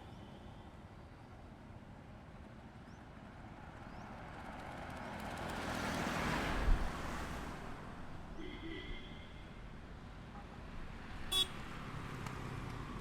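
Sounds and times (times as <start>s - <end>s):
vehicle horn steady tone: 8.4s - 9.6s, 11.3s - 11.6s.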